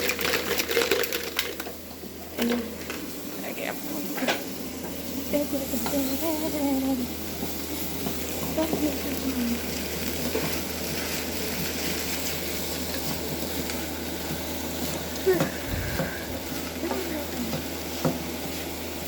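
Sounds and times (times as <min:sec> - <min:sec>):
onions sizzling in a frying pan: 0:00.0 - 0:19.0.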